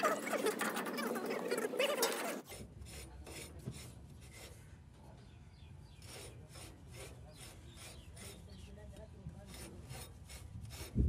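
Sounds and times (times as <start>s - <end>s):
busy workshop noise: 0.0s - 11.0s
rhythmic rasping strokes: 6.0s - 8.7s, 9.4s - 11.0s.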